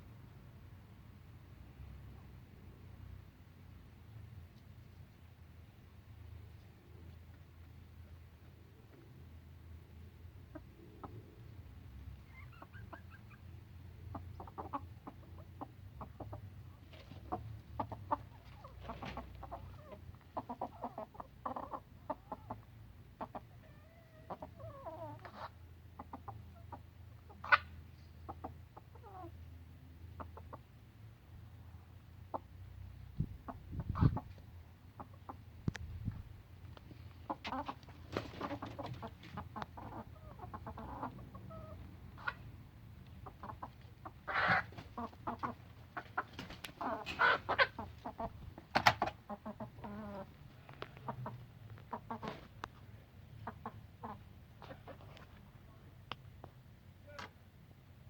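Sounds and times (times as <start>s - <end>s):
hen clucking: 10.4s - 29.4s, 30.0s - 30.8s, 32.2s - 32.6s, 33.2s - 36.2s, 37.0s - 55.2s.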